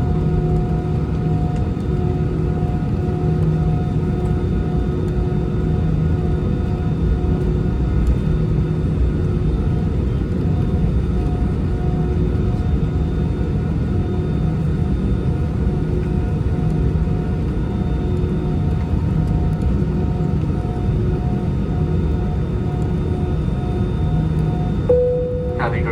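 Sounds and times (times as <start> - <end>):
jet engines running: 24.9 - 25.9.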